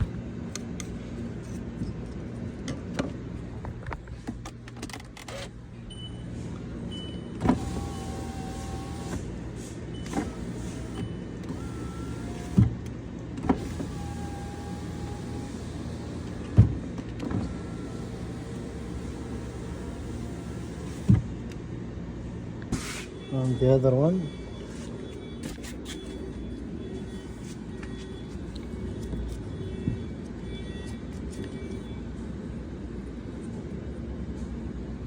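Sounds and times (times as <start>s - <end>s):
power window motor hum: 7.4s - 9.3s, 10.0s - 12.8s, 13.4s - 21.3s.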